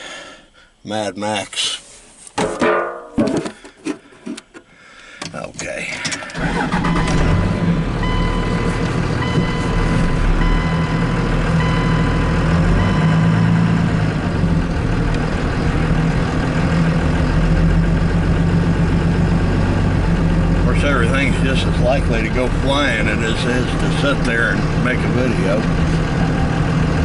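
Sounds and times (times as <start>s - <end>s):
truck engine idling: 6.3s - 27.0s
electronic beep: 6.8s - 7.4s, 8.0s - 8.6s, 9.2s - 13.5s.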